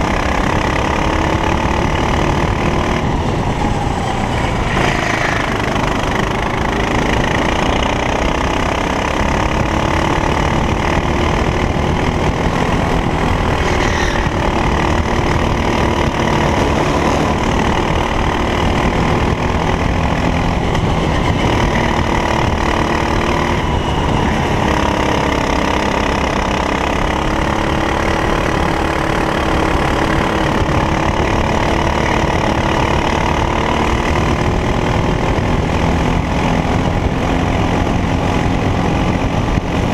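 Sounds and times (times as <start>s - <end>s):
kart engine revving: 0.0s - 39.9s.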